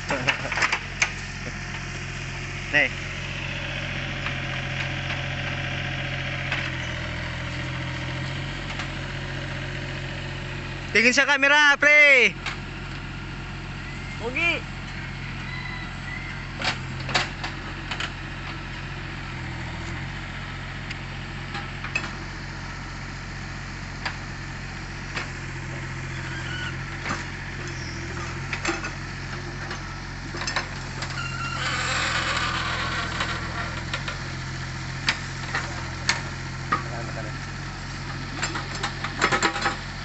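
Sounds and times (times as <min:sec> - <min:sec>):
excavator engine running: 0:00.0 - 0:40.0
clanks and knocks: 0:38.4 - 0:39.8.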